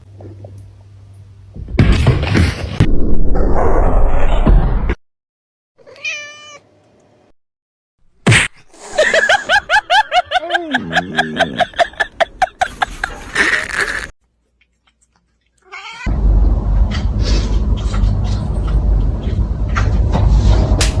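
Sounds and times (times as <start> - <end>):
short pitched animal cries: 5.8 - 6.6
loud low rumbling background: 16.1 - 21.0.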